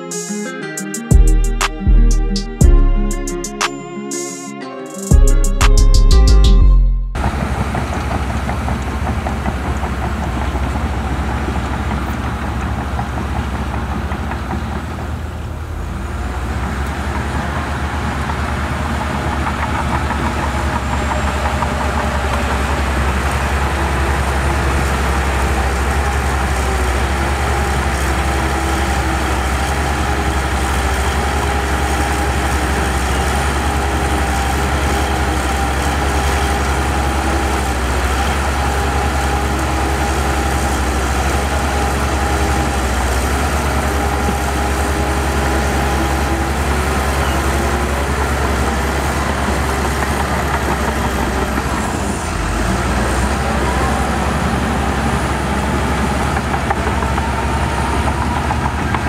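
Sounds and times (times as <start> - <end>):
steady whine: 0.0 - 59.0
diesel machinery engine drone: 5.1 - 59.0.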